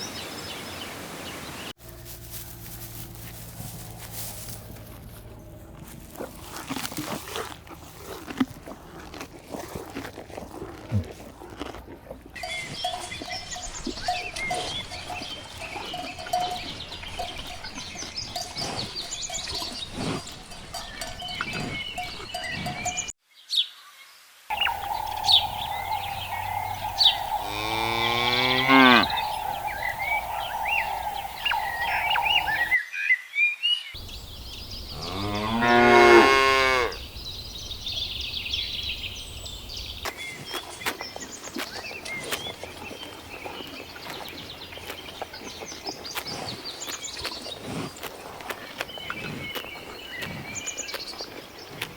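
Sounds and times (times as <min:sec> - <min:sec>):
cows mooing: 0:07.4 - 0:23.1, 0:24.5 - 0:32.8, 0:34.1 - 0:40.0
steady ringing tone: 0:24.5 - 0:32.8.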